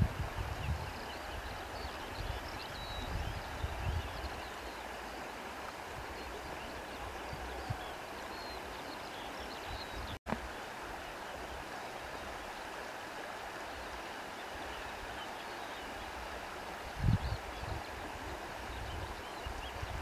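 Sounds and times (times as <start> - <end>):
wind rustling grass: 0.0 - 4.5
wind rumble on microphone: 0.0 - 4.6, 16.9 - 20.0.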